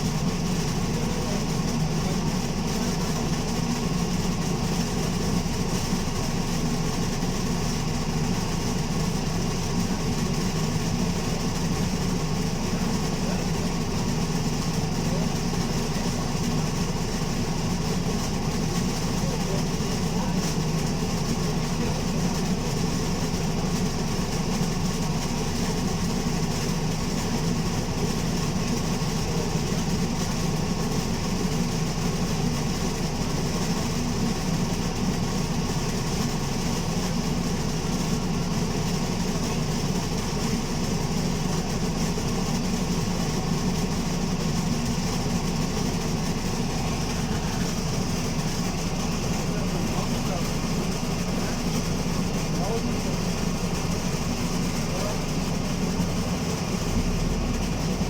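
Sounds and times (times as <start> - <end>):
bus engine rumbling: 34.3 - 58.0.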